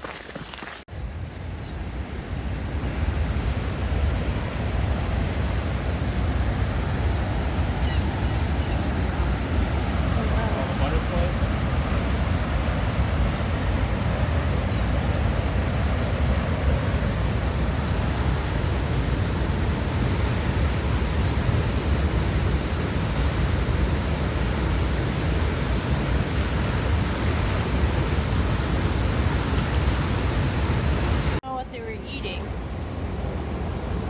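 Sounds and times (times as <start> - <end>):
river water rushing: 2.4 - 31.4.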